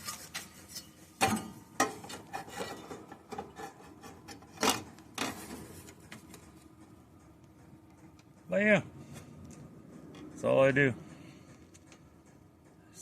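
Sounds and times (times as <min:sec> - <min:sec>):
sheet metal scraping against car body: 0:00.0 - 0:06.6.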